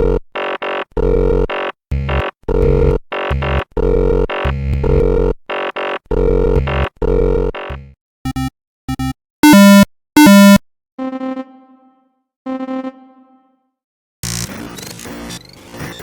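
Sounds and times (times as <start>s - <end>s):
buzzy electronic error tones: 1.0s - 5.3s, 6.2s - 13.4s
short electronic blips: 7.6s - 11.6s.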